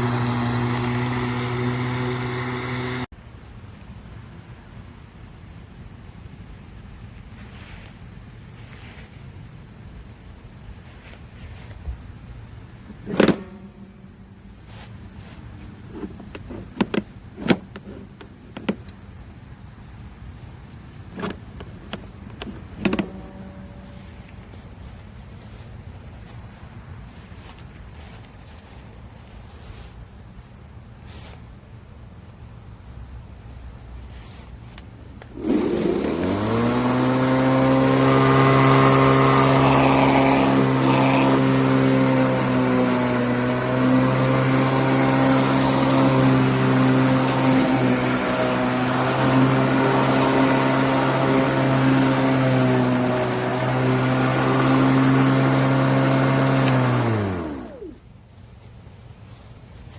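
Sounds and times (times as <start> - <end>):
electric lawn mower whirring: 0.0 - 3.1, 12.9 - 19.0, 21.2 - 25.6, 35.2 - 58.1
sharp clicks and knocks: 15.9 - 19.0
low steady hum: 21.8 - 26.1.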